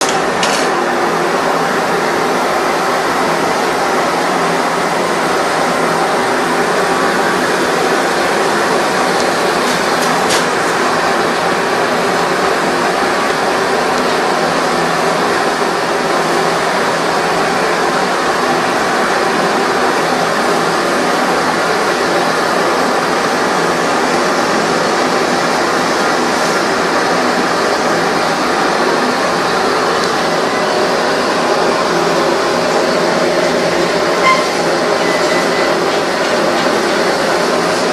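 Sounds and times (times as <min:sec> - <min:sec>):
kerosene stove burner hissing: 0:27.2 - 0:37.9.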